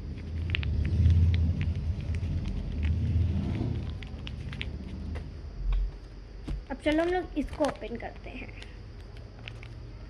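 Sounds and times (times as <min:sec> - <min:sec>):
low rumble: 0:00.0 - 0:05.8
packaging crinkling: 0:06.8 - 0:09.8.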